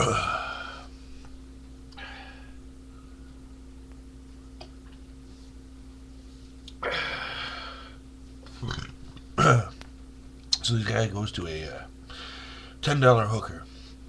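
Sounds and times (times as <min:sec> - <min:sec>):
man burping: 0:00.0 - 0:00.7, 0:06.8 - 0:07.4, 0:08.6 - 0:09.8
low electrical hum: 0:00.0 - 0:14.0
breathy exhale: 0:02.0 - 0:02.6, 0:12.1 - 0:12.8.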